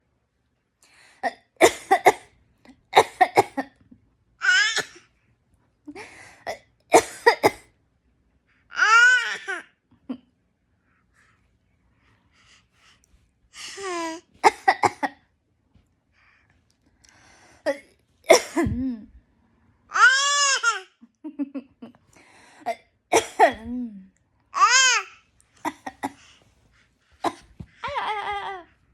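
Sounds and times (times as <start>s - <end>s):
baby pretend coughing: 1.2s - 2.3s, 2.9s - 3.8s, 4.4s - 5.1s, 6.5s - 7.7s, 13.9s - 15.2s, 17.7s - 18.8s, 22.7s - 23.7s, 27.2s - 27.8s
baby making imitation coughs: 1.3s - 2.3s, 4.4s - 5.1s, 6.6s - 7.6s, 22.7s - 23.7s.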